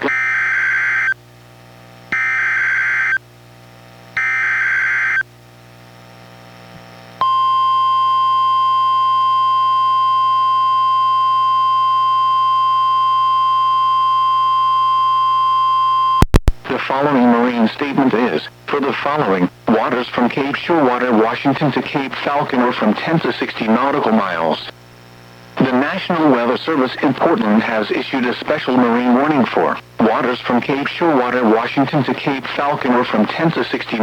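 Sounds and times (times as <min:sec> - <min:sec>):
steady warning alarm tone: 0:04.2 - 0:05.2.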